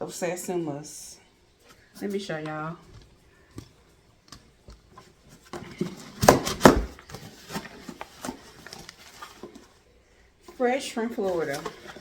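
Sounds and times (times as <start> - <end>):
cardboard box rustling: 4.9 - 9.8, 10.5 - 12.0
loud knocks on box: 6.2 - 7.0.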